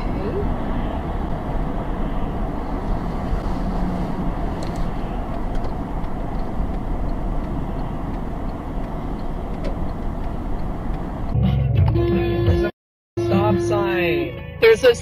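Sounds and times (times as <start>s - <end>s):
car engine and road noise: 0.0s - 12.6s.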